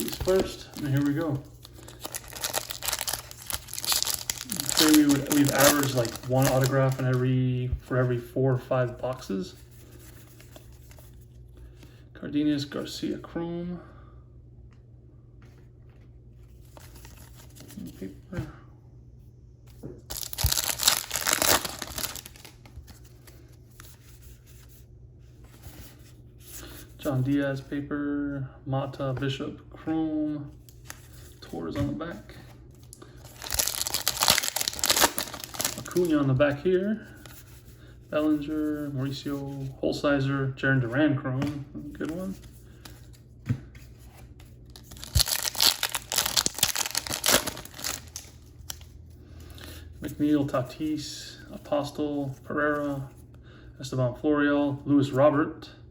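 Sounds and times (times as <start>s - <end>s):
wrapper tearing and crinkling: 0.0s - 7.2s, 20.1s - 22.6s, 32.9s - 36.2s, 44.7s - 48.9s
cards rustling: 0.0s - 8.0s, 15.9s - 18.2s, 20.1s - 24.6s, 30.6s - 37.5s, 41.4s - 49.0s.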